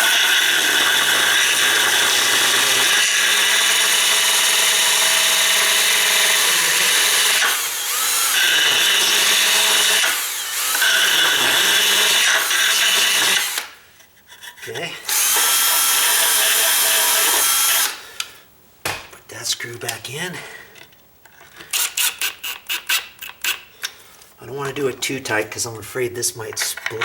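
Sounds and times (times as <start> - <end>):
electric drill grinding: 0.0 - 13.8, 15.0 - 18.3.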